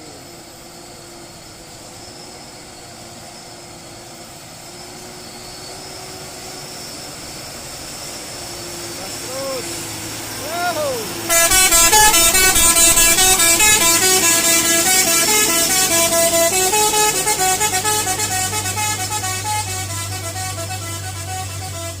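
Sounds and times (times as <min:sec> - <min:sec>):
truck engine hum: 0:00.0 - 0:22.0
musical air horn tune: 0:11.2 - 0:22.0.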